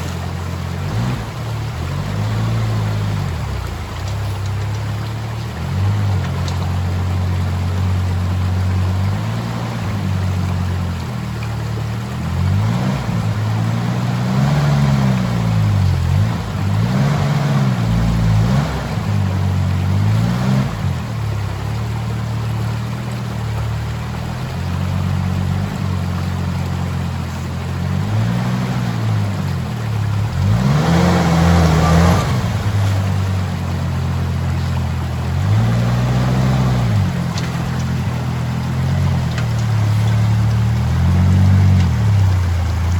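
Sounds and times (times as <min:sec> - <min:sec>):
engine revving in short bursts: 0:30.0 - 0:34.8.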